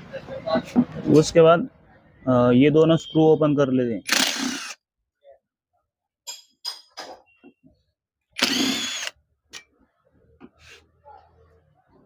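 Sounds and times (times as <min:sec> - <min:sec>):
pump motor whirring: 0:04.1 - 0:04.8, 0:08.4 - 0:09.1.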